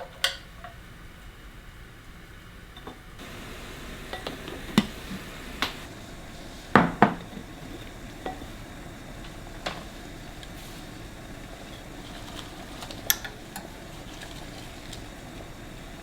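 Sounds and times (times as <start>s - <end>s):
faint steady hiss: 0.0s - 16.0s
dishes set down clinking: 2.9s - 5.9s.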